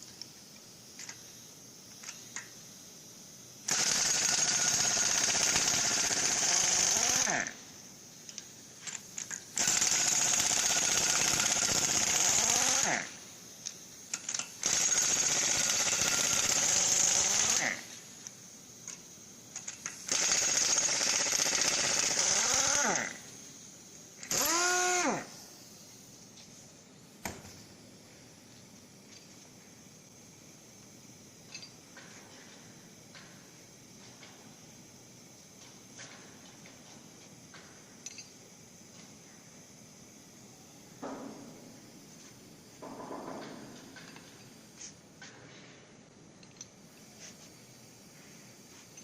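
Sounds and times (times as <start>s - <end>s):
power tool motor running: 3.7s - 7.6s, 9.6s - 13.1s, 14.6s - 17.9s, 20.1s - 23.3s, 24.2s - 25.3s.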